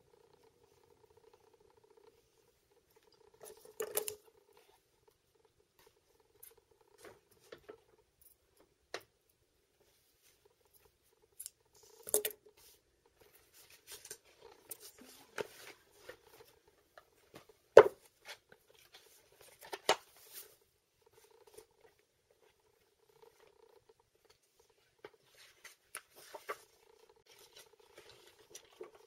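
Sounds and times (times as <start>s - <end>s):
paper and card rustling: 25.0s - 29.0s.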